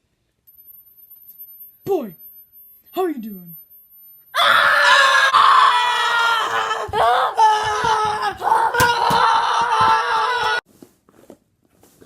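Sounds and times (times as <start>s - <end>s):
person screaming: 4.4s - 10.6s.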